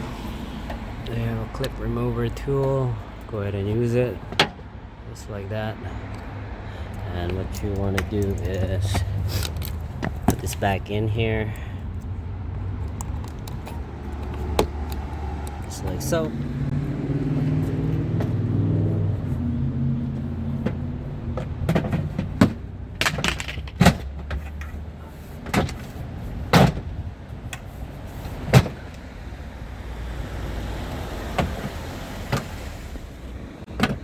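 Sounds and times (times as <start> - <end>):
plastic and metal clicks and knocks: 7.2 - 10.7, 12.8 - 15.8, 21.7 - 24.1.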